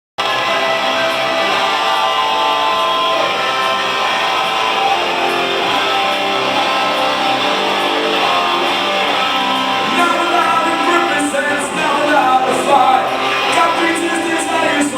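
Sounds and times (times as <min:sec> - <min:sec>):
rock band electric guitars: 0:00.2 - 0:14.9.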